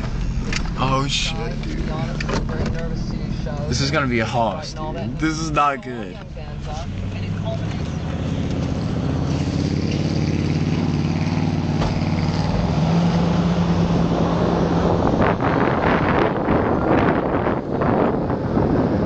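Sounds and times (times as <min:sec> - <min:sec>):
off-road vehicle engine revving: 0:00.0 - 0:19.0.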